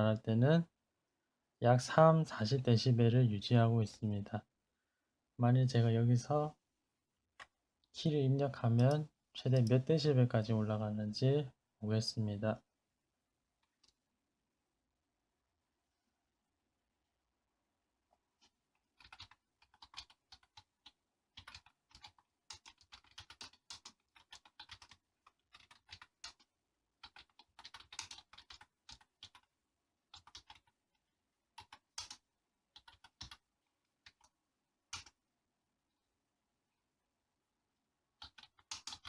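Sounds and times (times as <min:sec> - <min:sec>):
keyboard typing: 0:08.4 - 0:09.8, 0:18.4 - 0:29.5, 0:30.1 - 0:30.8, 0:31.5 - 0:33.4, 0:34.0 - 0:35.2, 0:38.2 - 0:39.0.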